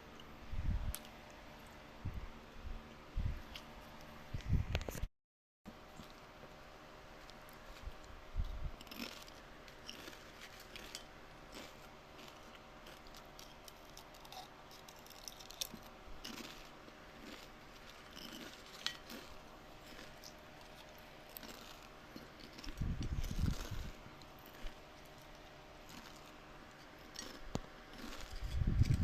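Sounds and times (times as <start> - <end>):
watermelon crunching and chewing: 7.2 - 29.0.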